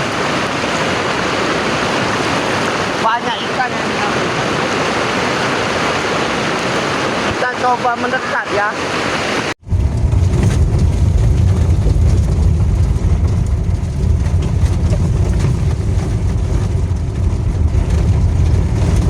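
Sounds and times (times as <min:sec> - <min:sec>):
waterfall roaring: 0:00.0 - 0:09.6.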